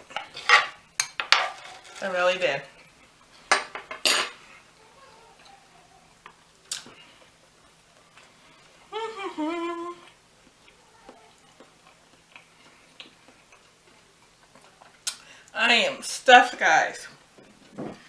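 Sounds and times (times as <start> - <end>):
woman humming: 8.9 - 10.2.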